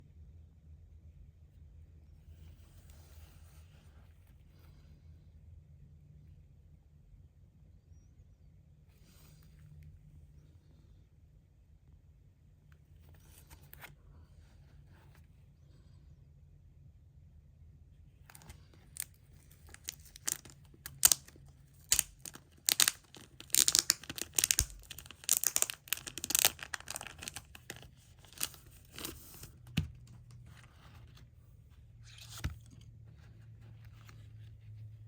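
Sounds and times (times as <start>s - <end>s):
plastic wrapping tearing: 18.3s - 29.6s.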